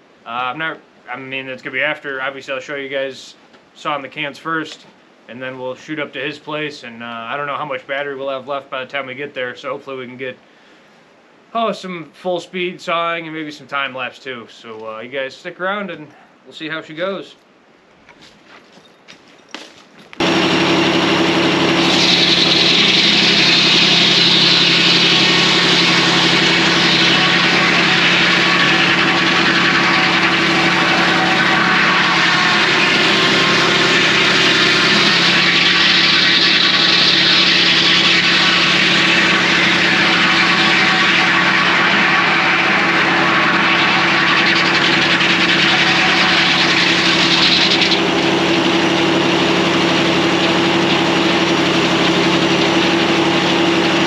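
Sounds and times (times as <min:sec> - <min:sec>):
circular saw cutting log: 0:20.2 - 0:54.0
diesel engine running: 0:20.2 - 0:54.0.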